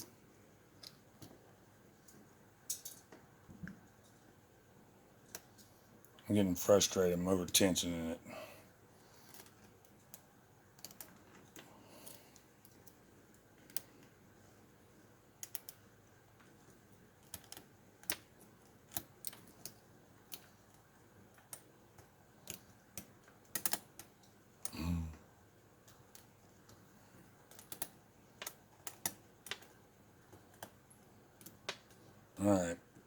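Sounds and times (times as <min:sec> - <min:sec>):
lock pick clicking pins: 0:09.3 - 0:11.6, 0:15.4 - 0:15.9, 0:17.2 - 0:24.4, 0:27.5 - 0:29.8.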